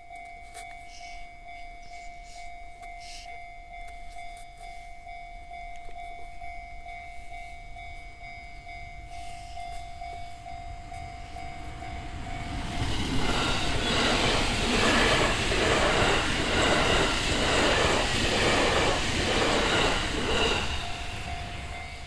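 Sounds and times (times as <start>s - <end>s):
level-crossing warning bell ringing: 0.0s - 22.0s
approaching train noise: 5.4s - 22.0s.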